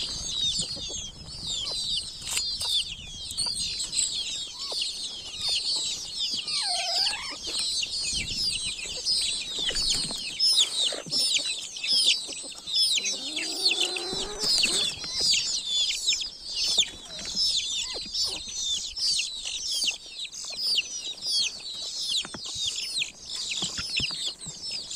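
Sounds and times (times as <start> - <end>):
baby chicks peeping: 0.0 - 24.9
hen clucking: 5.4 - 7.6, 8.2 - 15.4.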